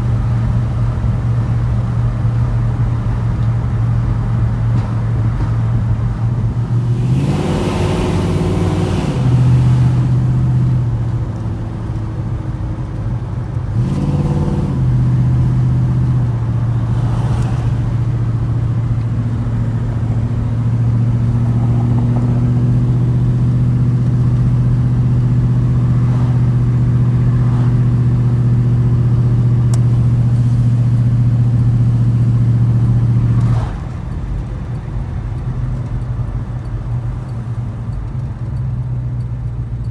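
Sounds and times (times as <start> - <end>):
v-eight engine revving: 6.1 - 34.2.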